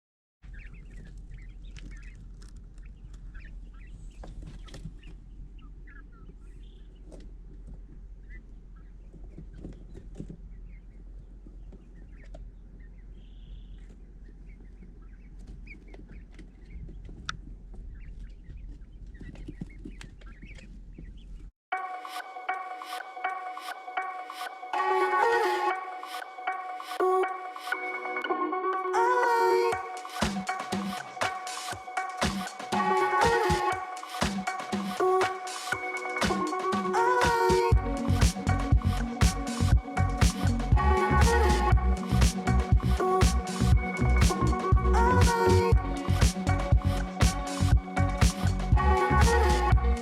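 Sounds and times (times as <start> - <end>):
young quail chirping and peeping: 0.4 - 7.3, 8.1 - 21.5
music: 21.8 - 50.0
steady low hum: 37.5 - 50.0.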